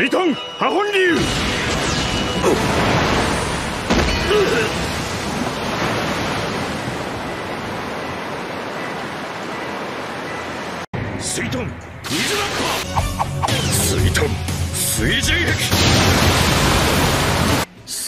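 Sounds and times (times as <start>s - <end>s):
water torrent rushing: 2.4s - 10.9s, 15.7s - 17.7s.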